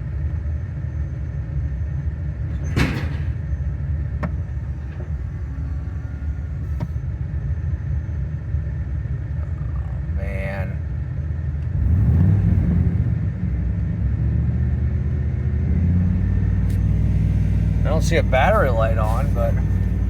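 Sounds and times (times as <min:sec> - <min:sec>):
pickup engine idling: 0:00.1 - 0:12.2, 0:13.1 - 0:20.0.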